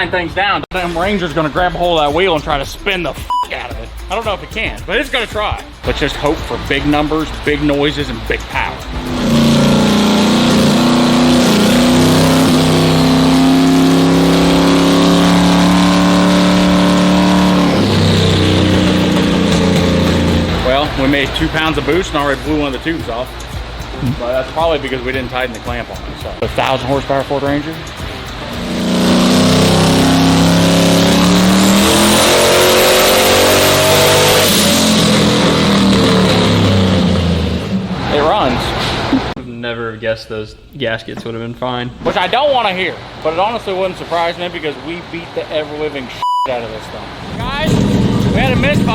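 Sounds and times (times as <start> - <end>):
engine revving under load: 5.9 - 24.4, 27.8 - 39.4, 47.1 - 48.9.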